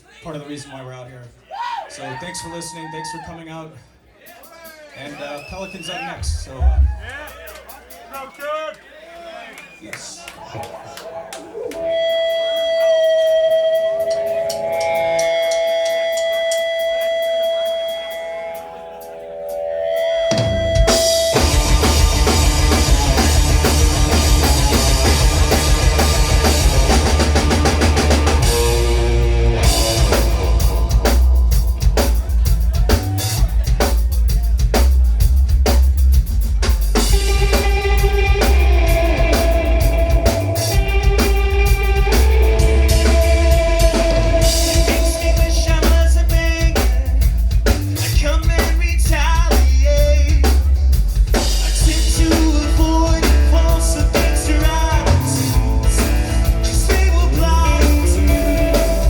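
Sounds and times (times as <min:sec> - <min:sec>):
drum kit beat: 0:05.5 - 0:08.4, 0:11.7 - 0:59.0
heavy bass: 0:06.2 - 0:08.0, 0:20.1 - 0:59.0
electric guitar: 0:11.5 - 0:33.6, 0:37.0 - 0:47.6, 0:51.8 - 0:59.0.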